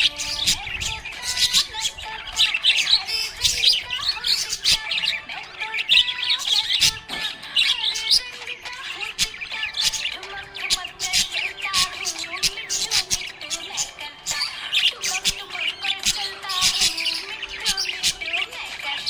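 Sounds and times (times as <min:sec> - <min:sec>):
parrots chirping and chattering: 0:00.0 - 0:19.0.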